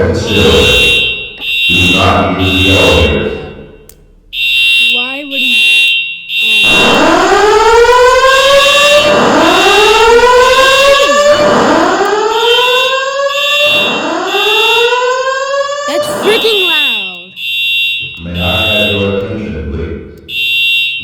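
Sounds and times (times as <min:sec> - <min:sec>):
fire alarm whoop tone: 0:00.0 - 0:19.3, 0:20.3 - 0:21.0
high pulsing beep: 0:00.1 - 0:07.8, 0:08.6 - 0:12.0, 0:15.9 - 0:19.2.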